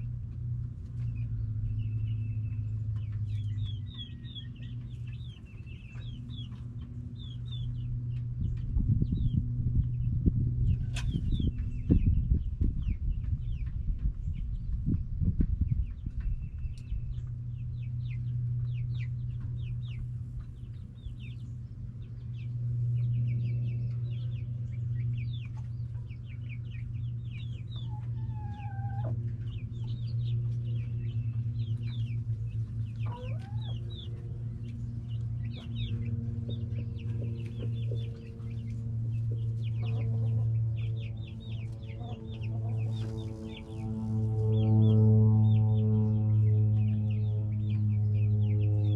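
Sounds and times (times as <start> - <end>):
steady low hum: 0.0 - 48.9
chickens clucking: 2.4 - 7.5, 25.4 - 44.4.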